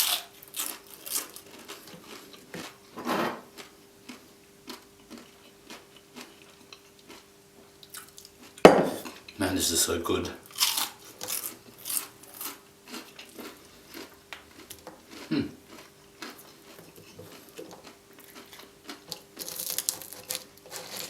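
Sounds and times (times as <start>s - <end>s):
crunchy chewing: 0.0s - 2.8s, 3.5s - 9.4s, 10.4s - 21.0s.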